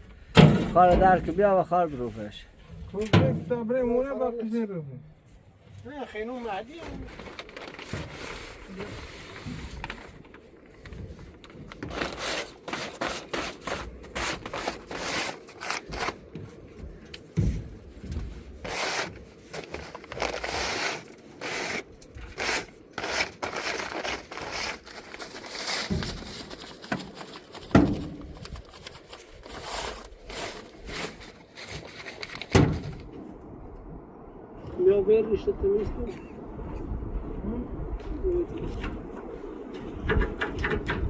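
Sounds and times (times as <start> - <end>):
shovel scraping a floor: 18.7 - 21.8.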